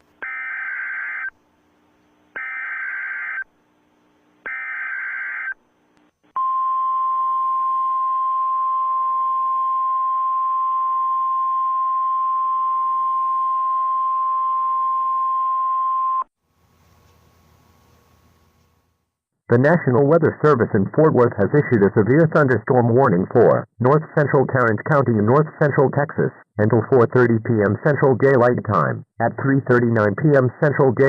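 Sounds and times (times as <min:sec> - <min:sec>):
steady high alarm tone: 0:02.4 - 0:03.5.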